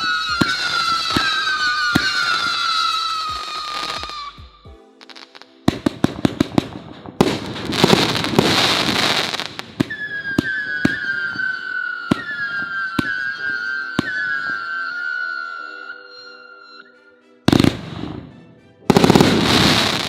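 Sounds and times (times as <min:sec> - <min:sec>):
firework breaks: 0:00.0 - 0:04.4, 0:05.7 - 0:14.6, 0:18.9 - 0:20.0
firework crackle: 0:00.0 - 0:04.4, 0:05.1 - 0:15.2, 0:18.9 - 0:20.0
whistling firework tails: 0:00.0 - 0:04.4, 0:05.7 - 0:16.8
sharp firework shots: 0:05.7 - 0:11.4, 0:18.9 - 0:20.0.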